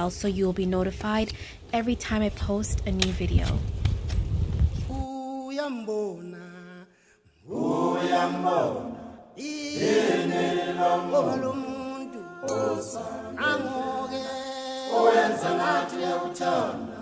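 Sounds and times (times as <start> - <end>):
voices chanting held notes: 7.5 - 17.0.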